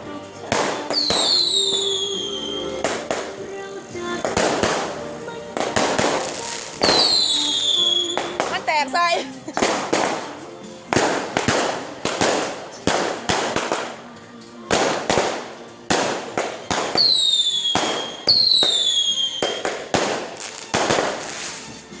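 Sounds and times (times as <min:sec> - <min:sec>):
fireworks bangs: 0:00.0 - 0:21.9
whistling firework shells: 0:00.9 - 0:03.1, 0:06.0 - 0:08.4, 0:16.8 - 0:21.2.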